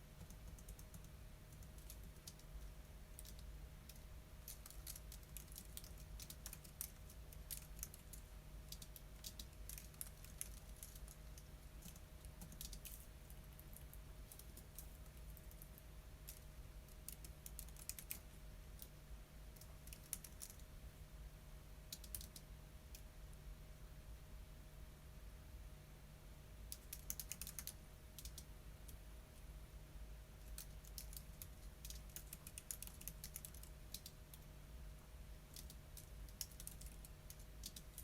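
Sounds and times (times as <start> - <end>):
low steady hum: 0.0 - 38.0
keyboard typing: 0.1 - 18.9, 19.6 - 20.7, 21.9 - 23.0, 26.7 - 29.0, 30.4 - 34.4, 35.5 - 38.0.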